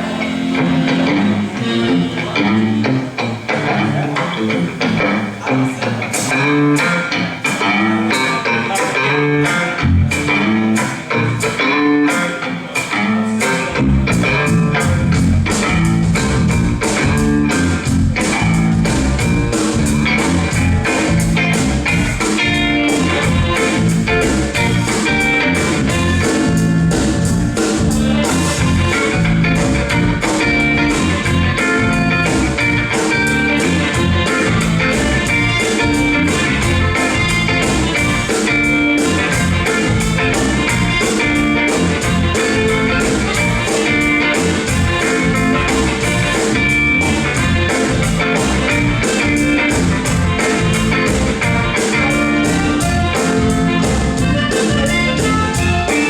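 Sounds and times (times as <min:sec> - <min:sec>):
bass guitar: 0:00.0 - 0:56.0
electric guitar: 0:00.0 - 0:56.0
drum kit beat: 0:04.4 - 0:56.0.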